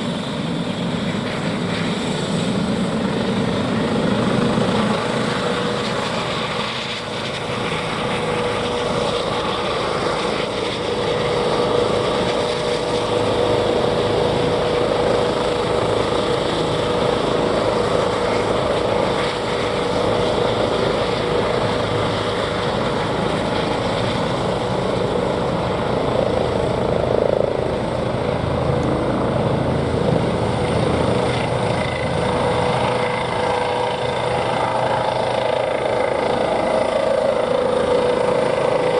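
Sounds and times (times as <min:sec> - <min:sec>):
helicopter engines running: 0:00.0 - 0:38.9.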